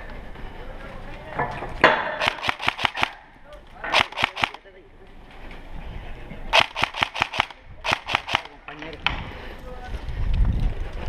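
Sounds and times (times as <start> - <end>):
airsoft guns firing: 1.8 - 3.3, 3.9 - 4.6, 6.5 - 8.8.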